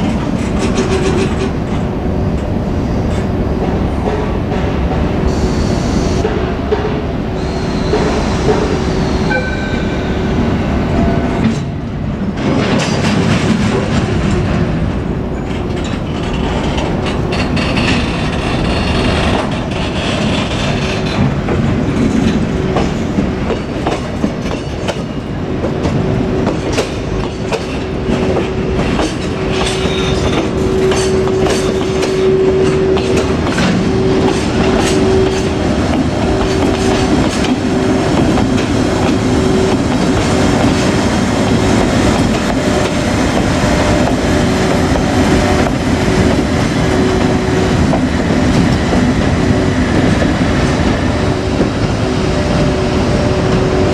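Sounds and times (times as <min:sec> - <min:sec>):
train wheels clattering over rail joints: 0:00.0 - 0:05.2, 0:12.3 - 0:52.0
steady locomotive tone: 0:00.0 - 0:53.9.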